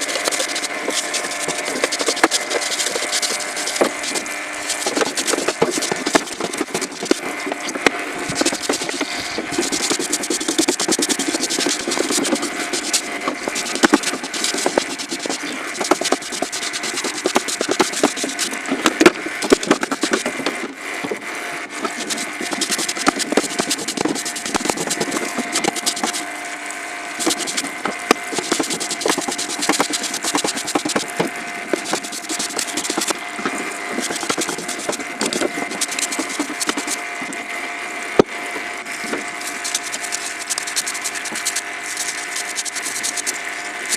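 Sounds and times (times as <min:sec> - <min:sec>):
small power tool motor running: 0:00.0 - 0:43.9.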